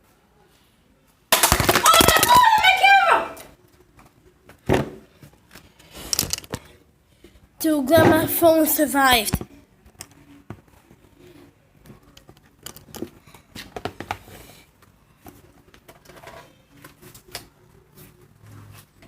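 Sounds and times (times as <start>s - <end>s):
small hard objects clicking: 1.4s - 2.6s, 6.0s - 6.6s.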